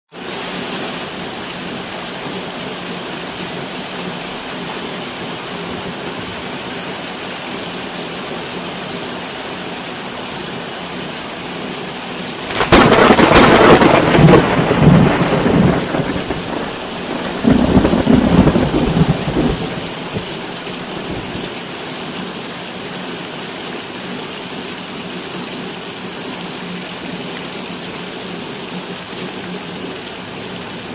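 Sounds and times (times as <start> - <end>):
steady rain: 0.1 - 30.9
thunder rumbling: 12.4 - 21.6.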